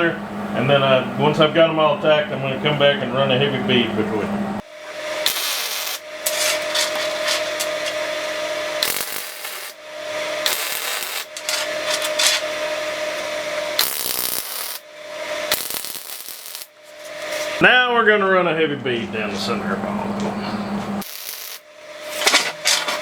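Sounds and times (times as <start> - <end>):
arc welder crackling: 4.6 - 17.6, 21.0 - 23.0.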